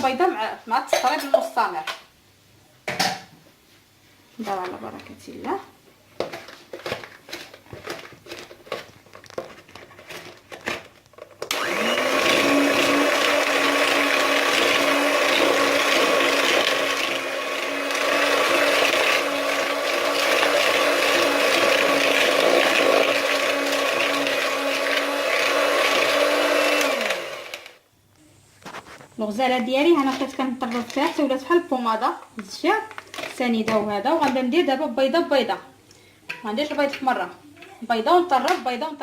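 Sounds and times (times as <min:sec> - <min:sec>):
electric hand mixer running: 0:11.5 - 0:27.8.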